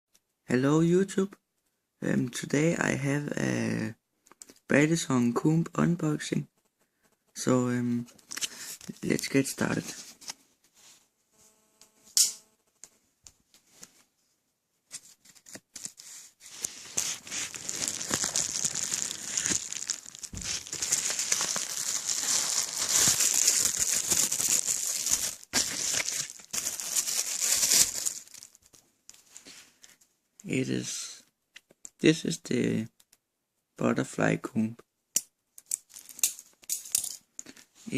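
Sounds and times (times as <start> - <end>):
packaging crinkling and tearing: 15.3 - 28.8.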